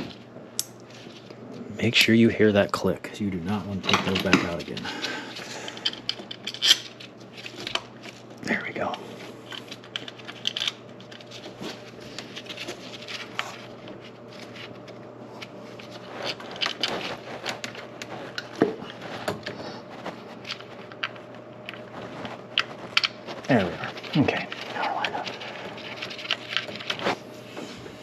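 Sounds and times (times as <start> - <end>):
steady low hum: 0.0 - 28.0.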